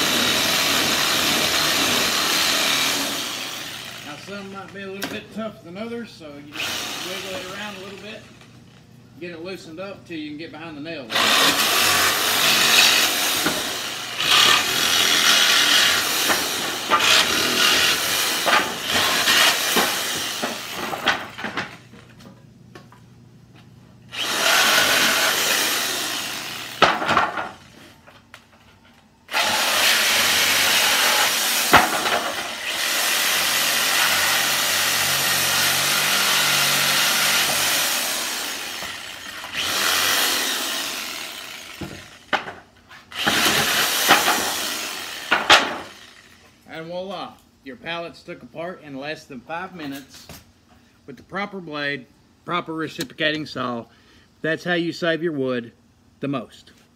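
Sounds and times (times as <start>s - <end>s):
reciprocating saw cutting nails: 11.1s - 20.8s, 24.1s - 27.2s, 29.3s - 42.4s, 43.0s - 46.4s.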